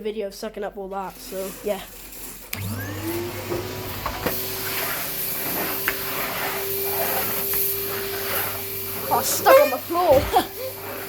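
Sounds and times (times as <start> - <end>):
vacuum cleaner motor whine: 2.4 - 11.0.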